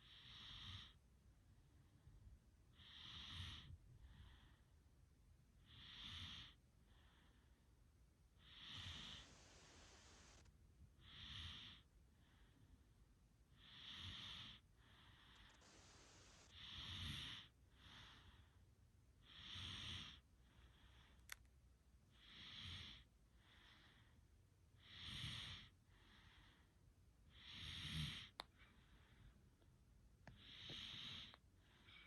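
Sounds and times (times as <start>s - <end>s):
person snoring softly: 0.0s - 1.0s, 2.7s - 4.7s, 5.6s - 7.6s, 8.4s - 12.8s, 13.5s - 18.6s, 19.2s - 21.4s, 22.1s - 24.2s, 24.8s - 26.7s, 27.3s - 29.4s, 30.2s - 32.0s.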